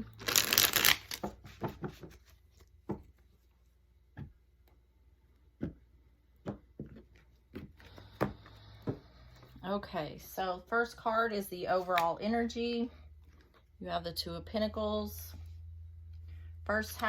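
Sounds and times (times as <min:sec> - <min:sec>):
cards shuffling: 0:00.0 - 0:02.8.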